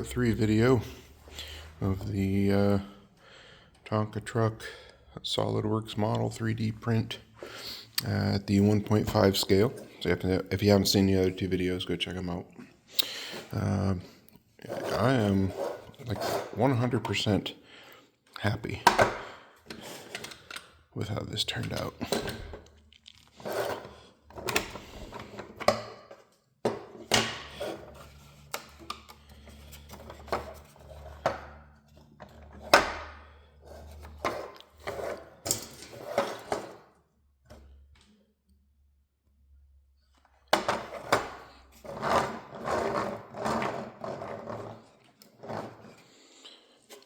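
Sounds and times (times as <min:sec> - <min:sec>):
objects knocking and clattering: 0:21.5 - 0:33.2, 0:33.9 - 0:38.1, 0:40.4 - 0:46.0.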